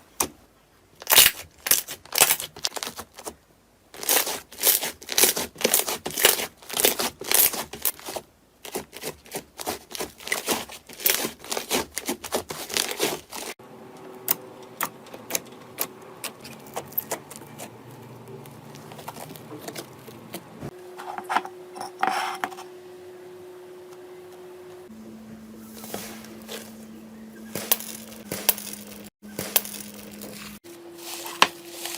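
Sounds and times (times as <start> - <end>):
faint steady hum: 13.6 - 31.9.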